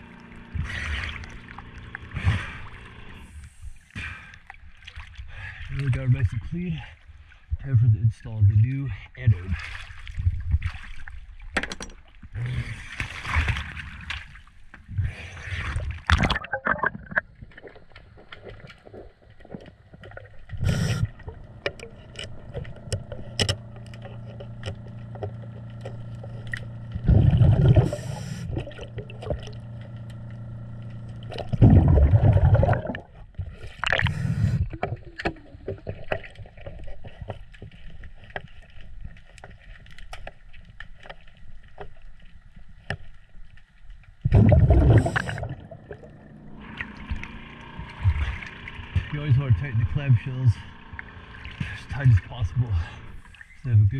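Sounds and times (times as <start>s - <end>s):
exhaled bubbles rushing: 14.9s - 19.2s, 27.0s - 29.7s, 31.2s - 36.1s, 44.2s - 53.6s
scuba regulator breathing underwater: 20.6s - 21.2s, 27.5s - 28.7s, 33.9s - 34.8s, 44.4s - 45.7s.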